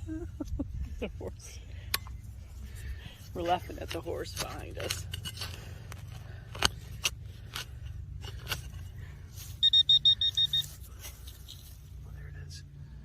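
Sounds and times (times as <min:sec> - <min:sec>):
sharp scrapes and clicks: 0:03.4 - 0:09.6
metal detector beeps: 0:09.4 - 0:10.9.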